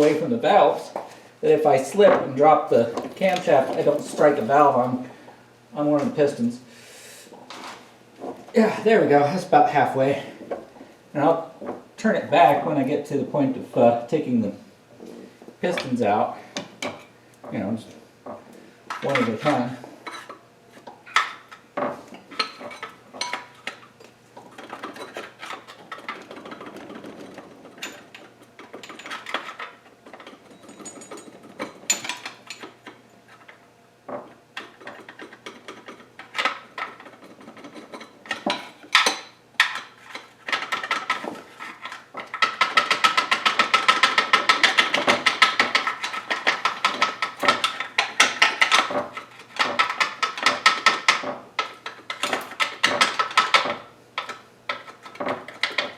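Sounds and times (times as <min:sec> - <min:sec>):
hand tools clinking on metal: 0:02.0 - 0:04.7.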